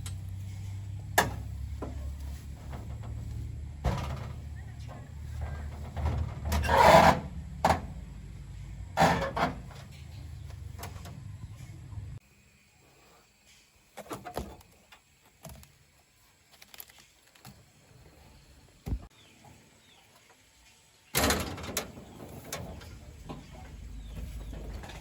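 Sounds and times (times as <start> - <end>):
clattering and scraping: 0.0 - 8.1, 8.8 - 11.2, 21.2 - 25.0.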